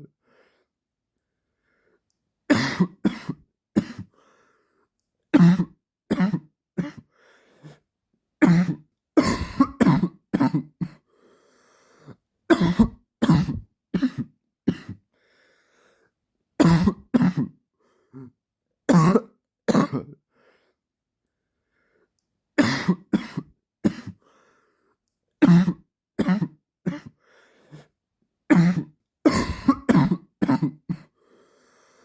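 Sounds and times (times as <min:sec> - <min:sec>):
faint breaths: 0:04.1 - 0:05.0, 0:07.1 - 0:07.9, 0:11.0 - 0:12.3, 0:15.1 - 0:16.2, 0:24.2 - 0:25.1, 0:27.2 - 0:28.0, 0:31.1 - 0:32.0
man coughing: 0:12.5 - 0:15.0, 0:18.9 - 0:20.2, 0:28.5 - 0:31.1.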